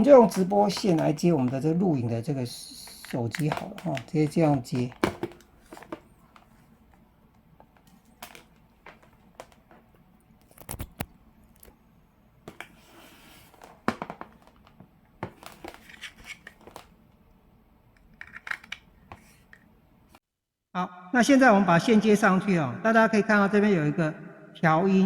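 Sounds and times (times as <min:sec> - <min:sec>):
plugs and plastic clicking: 0:00.0 - 0:01.7, 0:02.8 - 0:07.0, 0:17.9 - 0:19.7.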